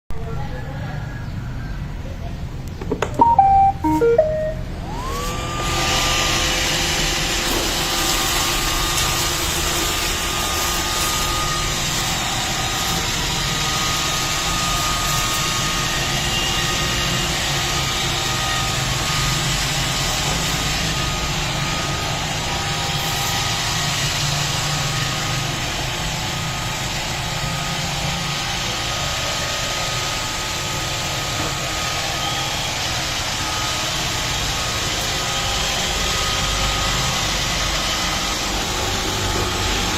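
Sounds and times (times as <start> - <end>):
beeping notes: 2.8 - 5.1
robot vacuum motor humming: 4.8 - 16.0.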